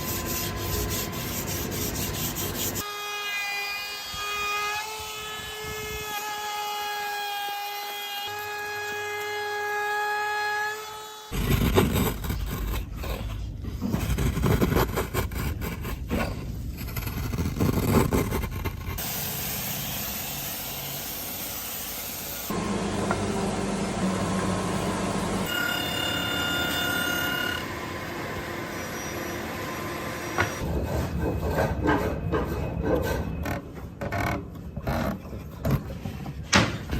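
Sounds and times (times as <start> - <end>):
woodworking machine noise: 19.0 - 35.0
machine whine: 22.2 - 30.6.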